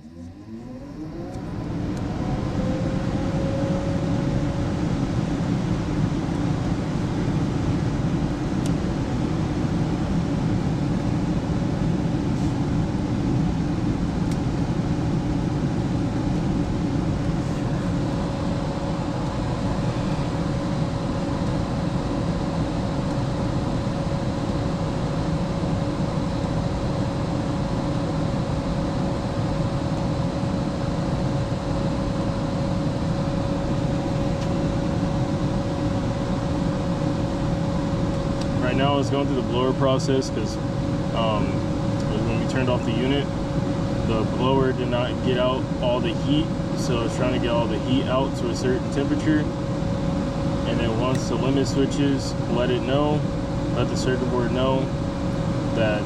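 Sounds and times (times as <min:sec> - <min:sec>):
furnace blower motor whirring: 0:00.0 - 0:07.8, 0:13.9 - 0:25.7, 0:31.0 - 0:56.0.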